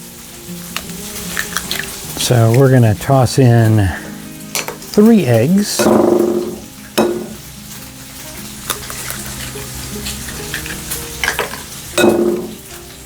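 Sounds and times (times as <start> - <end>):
bacon sizzling on a griddle: 0.0 - 13.0
taps and clinks: 4.6 - 5.0.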